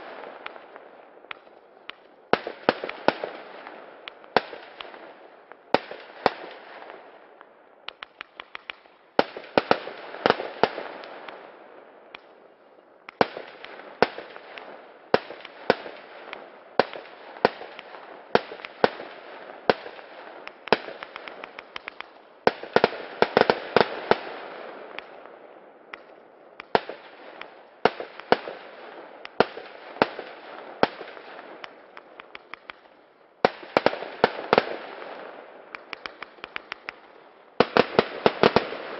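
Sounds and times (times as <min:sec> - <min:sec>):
fireworks crackling and hissing: 0:00.0 - 0:38.9
fireworks bangs: 0:13.2 - 0:38.9.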